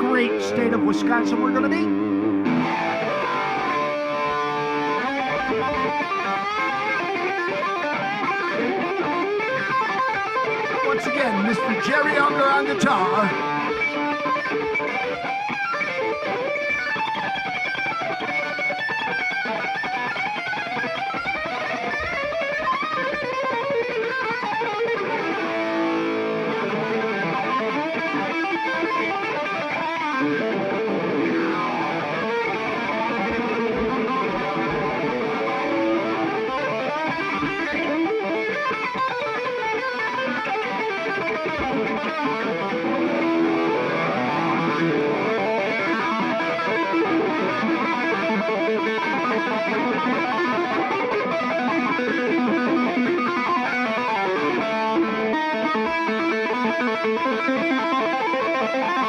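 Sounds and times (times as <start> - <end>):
electric guitar lead line: 0.0 - 59.0
live band music: 10.9 - 13.5.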